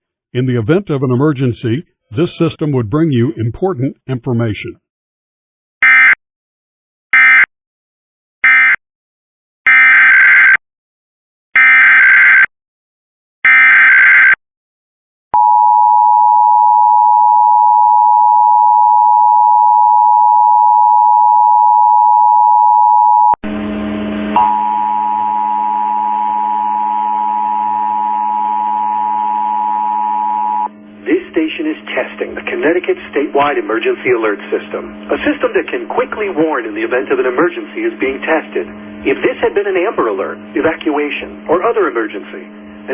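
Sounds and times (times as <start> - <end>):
low buzzing hum: 23.4 - 42.9
two-tone attention signal: 24.4 - 30.7.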